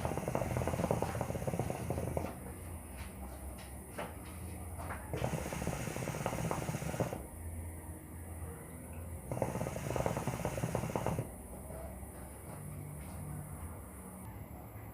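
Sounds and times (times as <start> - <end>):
hookah water bubbling: 0.0 - 2.3, 5.1 - 7.3, 8.7 - 11.4.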